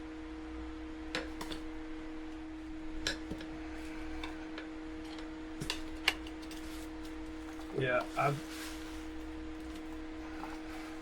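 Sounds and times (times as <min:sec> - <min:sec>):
steady hum: 0:00.0 - 0:11.0.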